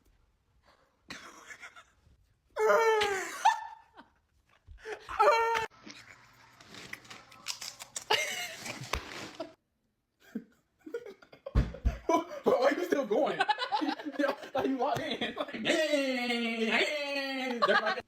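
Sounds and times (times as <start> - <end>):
laughter: 3.0 - 5.0, 8.1 - 8.8, 10.2 - 12.4, 13.2 - 15.8, 17.3 - 18.0.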